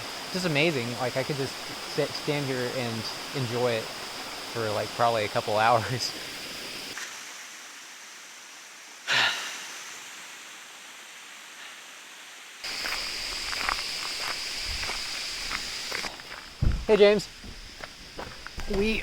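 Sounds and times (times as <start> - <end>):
small waterfall rushing: 0.0 - 19.0
loud breath: 9.1 - 9.8.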